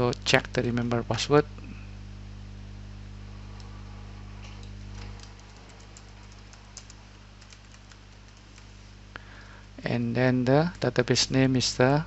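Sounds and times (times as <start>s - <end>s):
low electrical hum: 0.0s - 12.0s
keyboard keys clicking: 5.0s - 8.7s.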